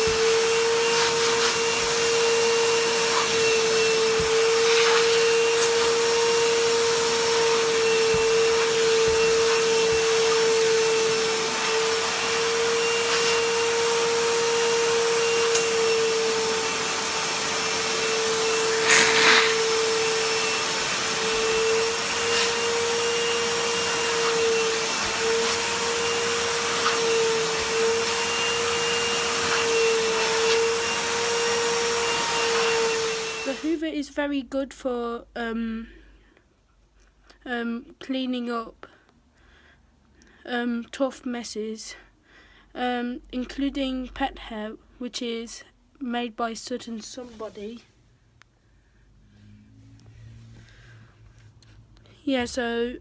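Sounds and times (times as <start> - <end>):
wet dry vacuum running: 0.0 - 33.8.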